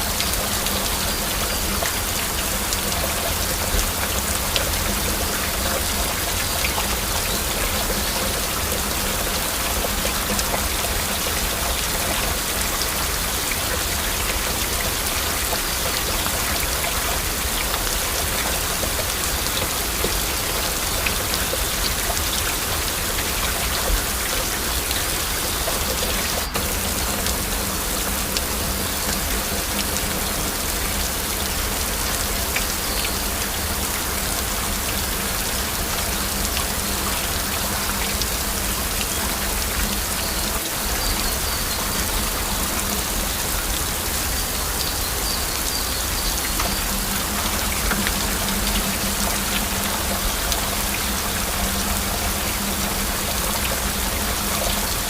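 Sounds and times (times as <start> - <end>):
heavy rain: 0.0 - 55.0.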